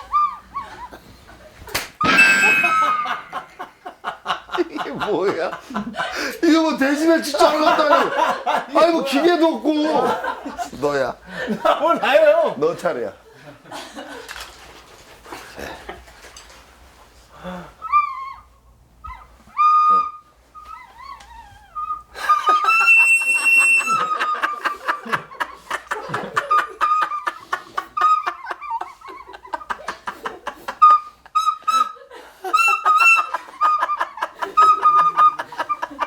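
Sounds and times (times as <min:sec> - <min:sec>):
recorder squeaking notes: 0:00.0 - 0:00.6, 0:02.0 - 0:03.6, 0:17.8 - 0:24.7, 0:30.8 - 0:35.9
loud laughter: 0:02.0 - 0:12.5, 0:22.2 - 0:36.0.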